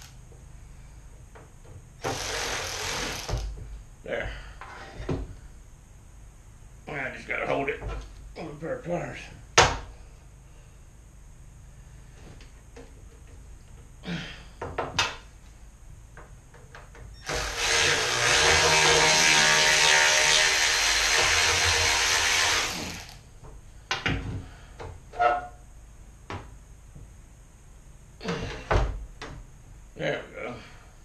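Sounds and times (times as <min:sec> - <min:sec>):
power drill driving a screw: 0:02.0 - 0:03.5, 0:17.2 - 0:23.2.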